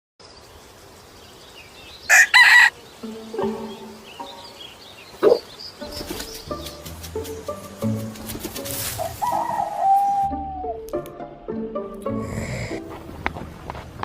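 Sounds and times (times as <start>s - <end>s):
faint bird chirping: 0.2s - 6.7s
rooster crowing: 2.1s - 2.8s
soft low music notes: 2.8s - 14.0s.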